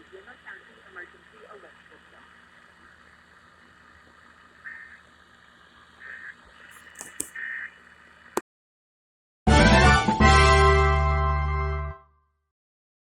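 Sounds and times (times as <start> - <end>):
clicks: 6.8 - 7.4.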